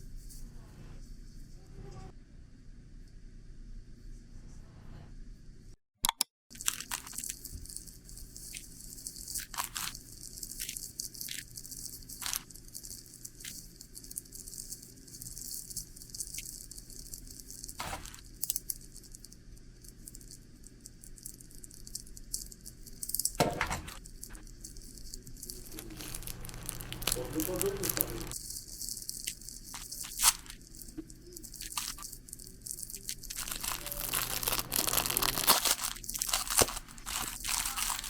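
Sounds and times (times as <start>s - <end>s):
rustling and crinkling handling: 6.5s - 19.2s, 21.1s - 38.0s.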